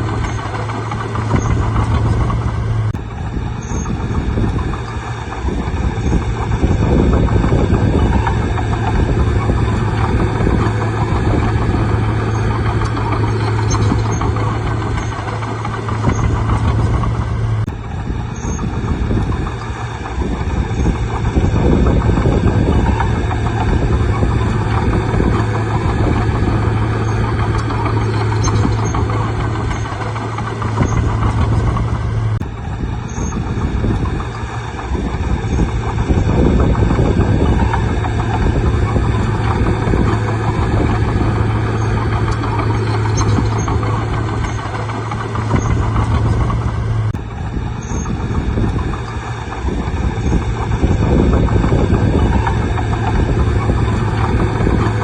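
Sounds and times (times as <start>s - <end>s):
diesel engine droning: 0.0s - 55.0s.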